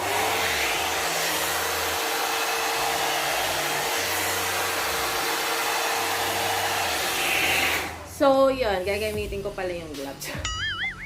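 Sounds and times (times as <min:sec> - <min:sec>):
hot-air brush blowing: 0:00.0 - 0:08.1.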